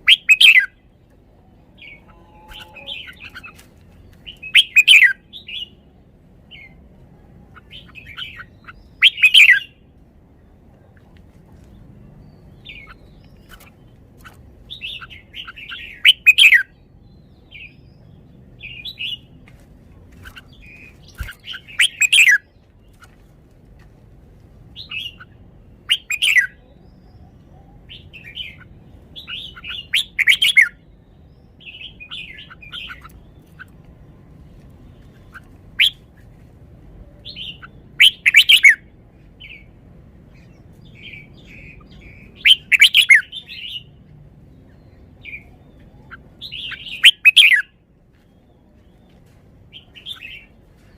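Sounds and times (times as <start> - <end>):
soft bird twittering: 0.0 - 5.8, 7.5 - 9.8, 20.1 - 23.2, 24.8 - 36.4, 37.0 - 39.7, 40.3 - 50.9
bird song phrases: 0.0 - 23.3, 24.7 - 50.9.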